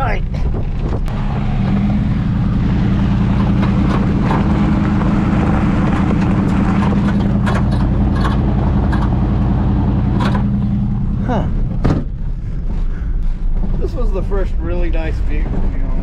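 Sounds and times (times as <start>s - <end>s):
rattles: 0.0s - 1.2s, 3.1s - 16.0s
vehicle engine droning: 0.0s - 16.0s
sharp knocks: 11.7s - 12.2s.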